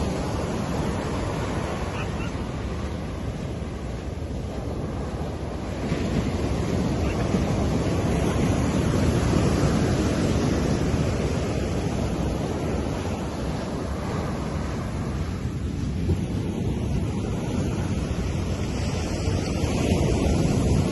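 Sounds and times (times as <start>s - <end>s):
low rumble of the sea: 0.0s - 20.9s
wave wash on beach: 0.0s - 20.9s.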